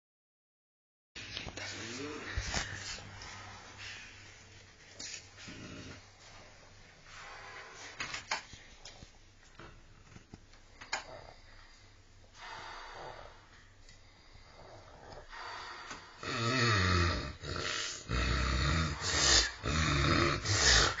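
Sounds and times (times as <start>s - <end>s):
dog snoring: 5.4s - 6.1s, 14.4s - 21.0s.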